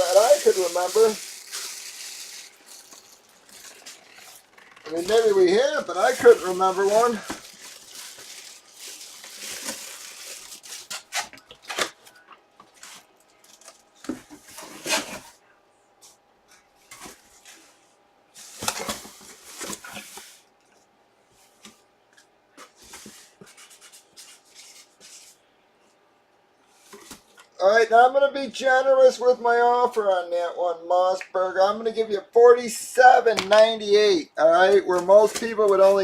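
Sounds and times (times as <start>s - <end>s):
plastic packaging crinkling and tearing: 0.0s - 12.0s.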